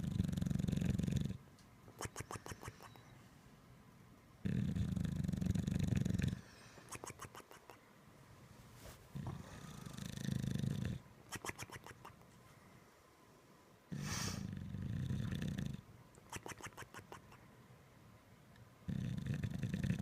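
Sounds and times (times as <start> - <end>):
dog snoring: 0.0 - 1.4, 4.4 - 6.6, 9.2 - 11.0, 13.9 - 15.9, 18.9 - 20.0.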